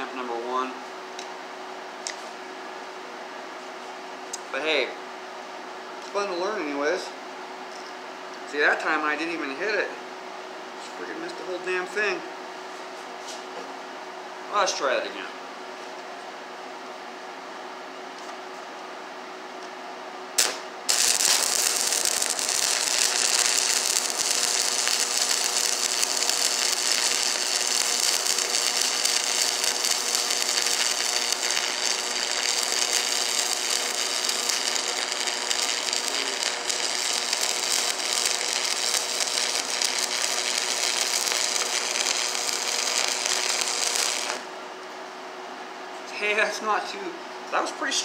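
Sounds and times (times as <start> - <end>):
welding arc crackling: 20.4 - 44.5.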